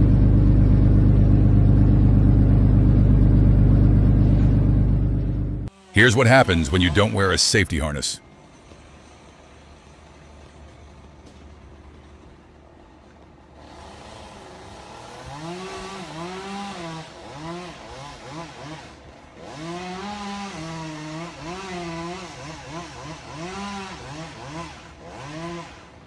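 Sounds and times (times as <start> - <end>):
chainsaw engine revving: 19.4 - 25.8.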